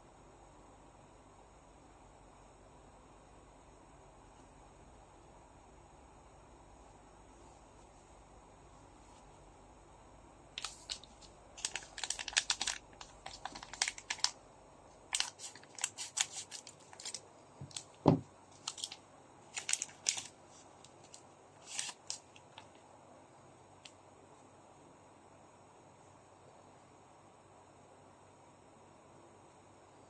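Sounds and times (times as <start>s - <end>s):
foil wrappers crinkling and tearing: 10.6s - 14.4s, 15.1s - 18.0s, 18.6s - 22.7s
dull thump: 18.0s - 18.2s.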